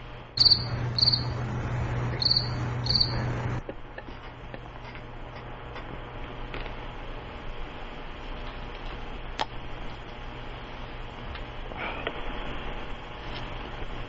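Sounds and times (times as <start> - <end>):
low hum: 0.0 - 4.0
crickets chirping: 0.4 - 3.5.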